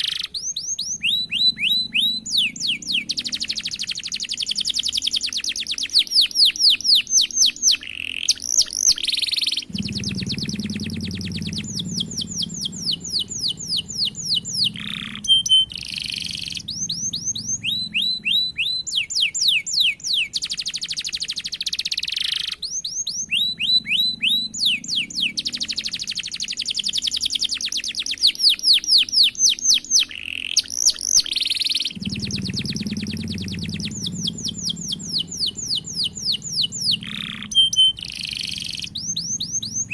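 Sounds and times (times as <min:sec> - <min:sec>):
canary singing trills: 0:00.0 - 0:39.9
low background rumble: 0:00.3 - 0:39.9.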